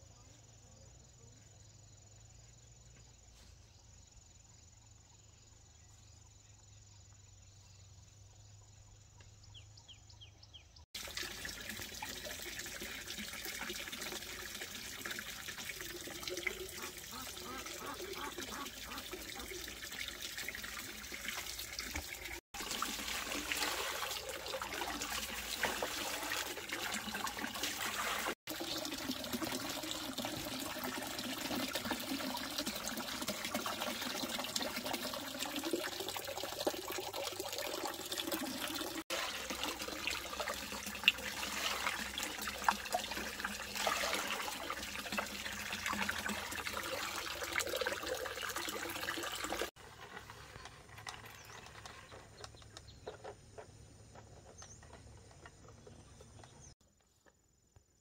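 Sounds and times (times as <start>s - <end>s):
water running and splashing: 11.0s - 52.4s.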